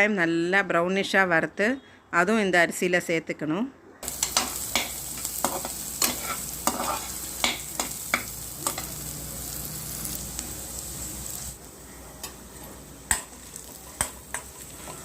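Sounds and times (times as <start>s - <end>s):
onions sizzling in oil: 4.0s - 15.0s.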